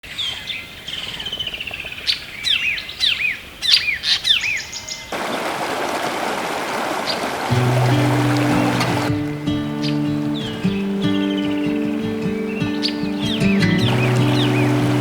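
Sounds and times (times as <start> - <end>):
songbird singing: 0.0 - 5.4, 7.1 - 15.0
creek water rushing: 5.1 - 15.0.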